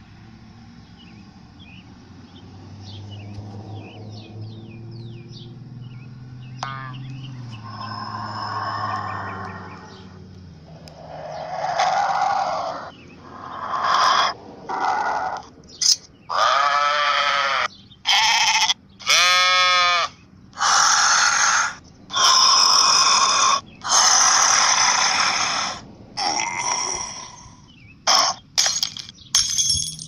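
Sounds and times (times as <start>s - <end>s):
pony bleat-like calls: 16.3s - 21.6s.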